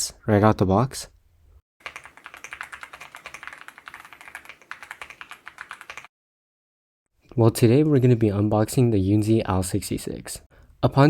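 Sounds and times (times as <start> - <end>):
mechanical keyboard typing: 1.8 - 6.1.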